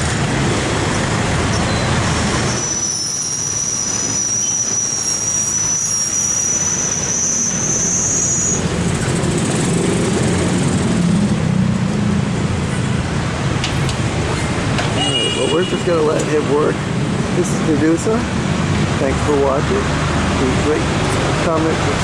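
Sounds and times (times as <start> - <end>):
key-cutting wheel squealing: 1.5 - 8.7.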